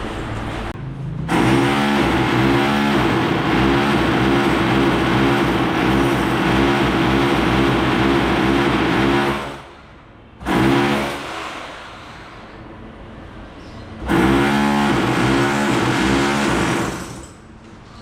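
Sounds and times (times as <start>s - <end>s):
pulsing power tool: 1.3s - 9.7s, 10.4s - 11.3s, 14.1s - 17.4s.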